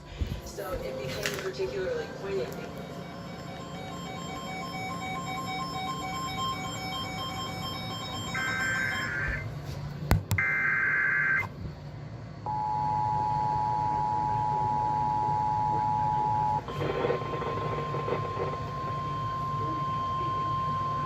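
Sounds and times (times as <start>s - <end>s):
two-tone attention signal: 2.0s - 9.5s, 12.5s - 21.0s.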